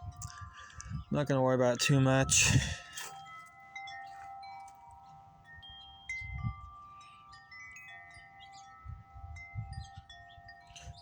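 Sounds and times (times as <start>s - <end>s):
strong wind: 0.0s - 3.0s, 6.1s - 6.8s, 8.8s - 11.0s
metal wind chimes ringing: 0.0s - 11.0s.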